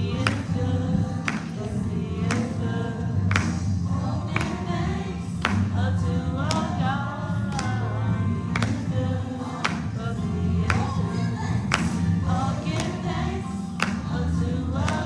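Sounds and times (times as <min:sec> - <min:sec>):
gospel voices singing over band: 0:00.0 - 0:15.0.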